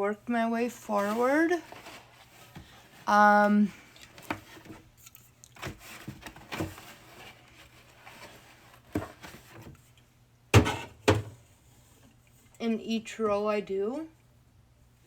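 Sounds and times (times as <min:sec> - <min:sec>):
cans knocking on a shelf: 0:10.6 - 0:11.4.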